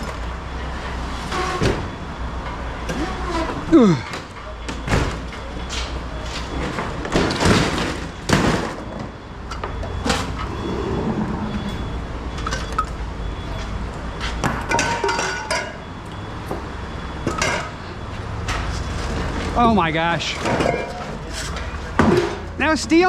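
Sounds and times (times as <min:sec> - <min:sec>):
steady low rumble: 0:10.3 - 0:13.4.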